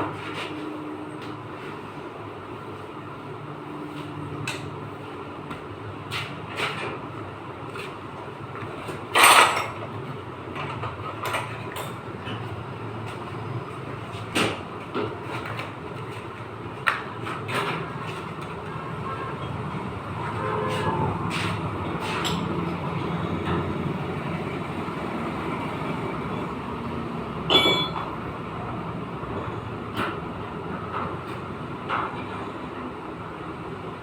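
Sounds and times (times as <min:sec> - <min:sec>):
loud metal clash: 0:27.5 - 0:28.0.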